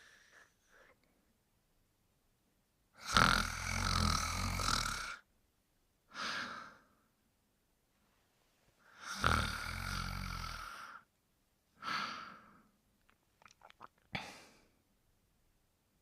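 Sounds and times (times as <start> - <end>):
breathy hiss: 0.0 - 1.0
rattling snore with low buzz: 3.0 - 5.2, 9.1 - 10.8.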